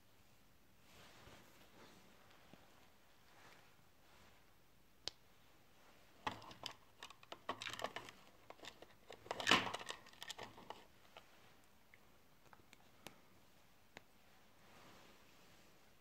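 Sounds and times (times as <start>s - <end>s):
plastic parts clicking and rattling: 6.2s - 10.9s.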